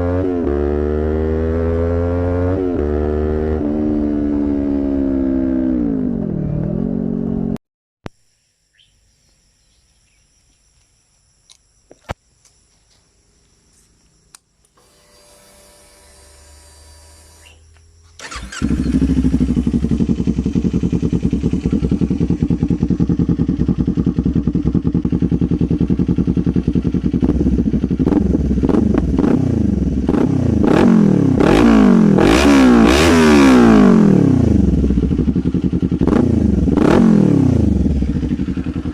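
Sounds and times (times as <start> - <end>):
motorcycle engine revving: 0.0 - 7.6, 18.2 - 38.9
engine idling: 18.2 - 28.6, 37.7 - 38.9.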